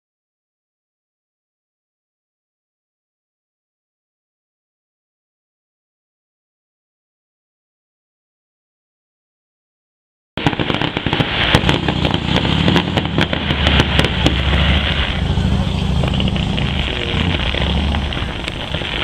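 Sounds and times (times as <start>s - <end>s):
fireworks crackling and popping: 10.4s - 19.0s
low rumble: 11.4s - 19.0s.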